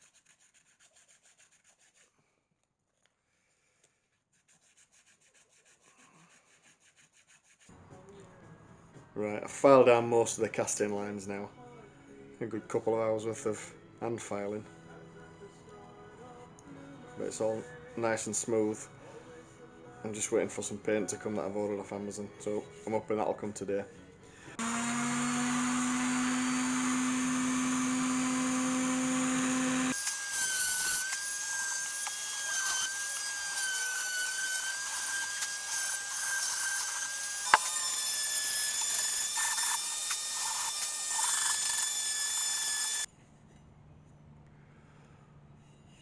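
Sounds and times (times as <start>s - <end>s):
high-pitched whining grinding: 24.6s - 43.1s
power tool motor hum: 24.6s - 43.1s.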